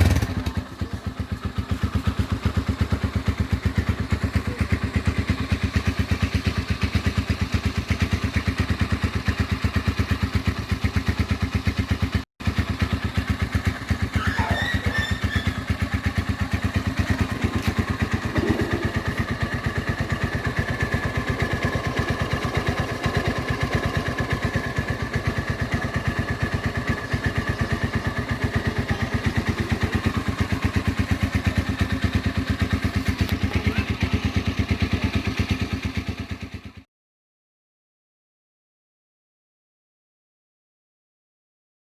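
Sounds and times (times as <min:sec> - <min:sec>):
motorcycle engine idling: 0:00.0 - 0:36.9.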